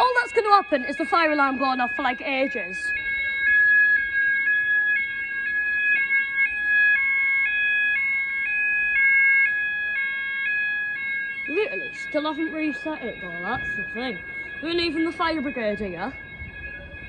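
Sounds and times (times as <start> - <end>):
fire alarm sounders warbling: 0.0 - 17.0.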